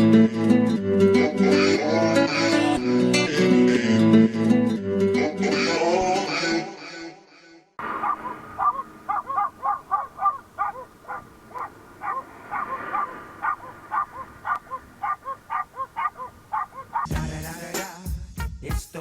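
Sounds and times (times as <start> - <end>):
animal short rapid calls: 7.8 - 17.1.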